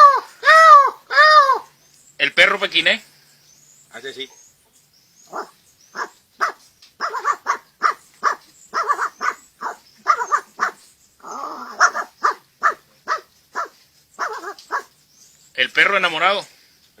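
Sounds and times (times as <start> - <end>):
man imitating dog barks: 0.0 - 1.7.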